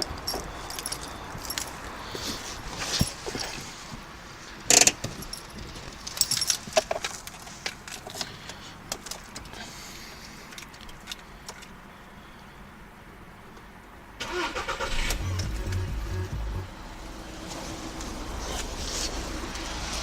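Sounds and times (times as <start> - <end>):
metallic clicks and jingling: 0.0 - 3.6, 4.7 - 8.3.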